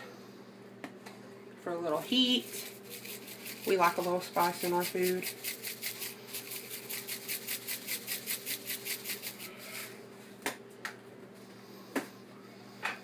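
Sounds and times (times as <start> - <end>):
spice shaker rattling: 2.1 - 9.5.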